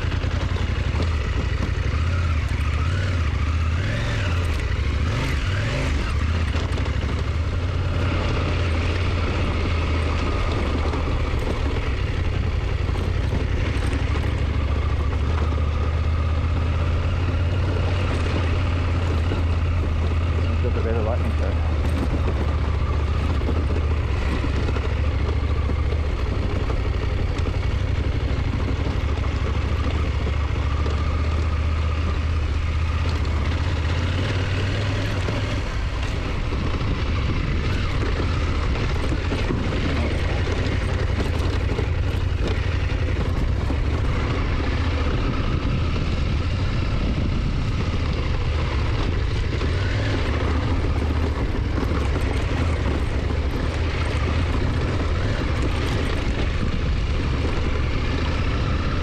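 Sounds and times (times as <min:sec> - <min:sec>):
motorcycle engine cruising: 0:00.0 - 0:59.0
wind rush on microphone: 0:32.0 - 0:59.0.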